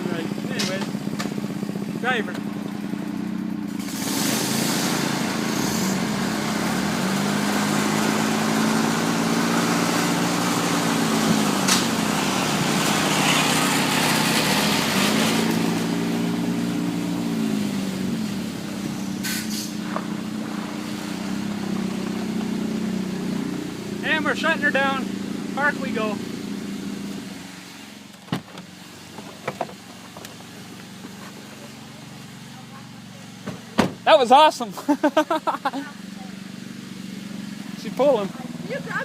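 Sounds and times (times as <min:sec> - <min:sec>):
small engine under load: 0:02.4 - 0:16.5.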